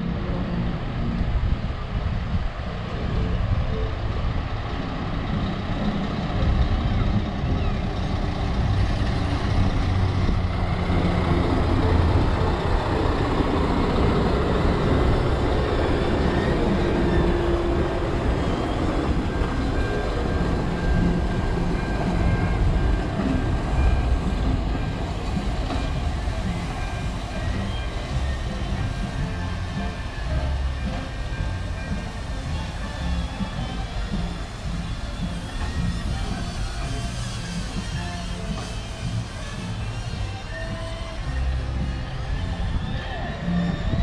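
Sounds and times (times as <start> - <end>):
locomotive hiss: 0.0 - 44.0
locomotive low rumble: 0.0 - 44.0.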